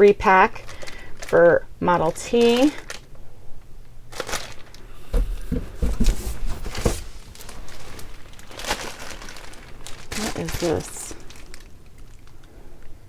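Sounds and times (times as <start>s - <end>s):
plastic packaging crinkling: 2.1s - 3.1s, 4.1s - 12.6s
dull thumps of objects set down: 4.9s - 8.1s.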